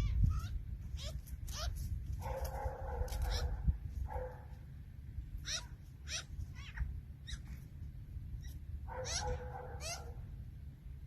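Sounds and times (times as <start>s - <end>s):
magpie squawking: 5.4s - 7.4s, 9.0s - 10.1s.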